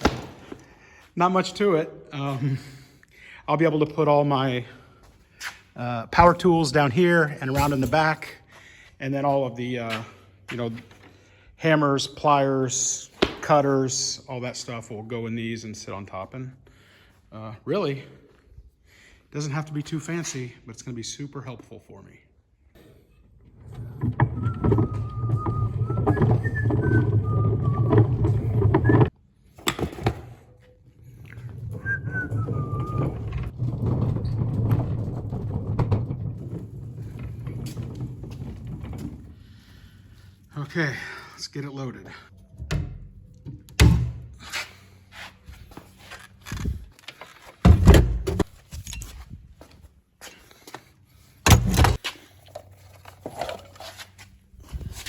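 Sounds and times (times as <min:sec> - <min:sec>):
heavy tool thunks: 0:00.0 - 0:00.6, 0:13.2 - 0:13.5, 0:51.4 - 0:52.0
cart wheels rumbling and squeaking: 0:23.3 - 0:29.1, 0:30.5 - 0:40.2.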